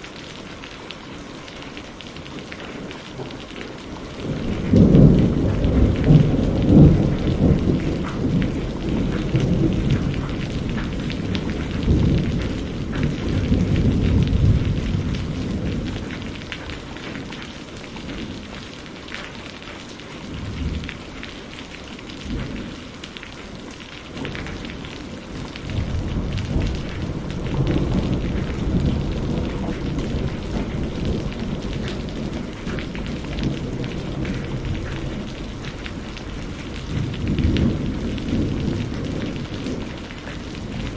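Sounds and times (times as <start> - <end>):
rain pattering: 0.0 - 40.9
rolling thunder: 4.2 - 17.2, 24.2 - 40.9.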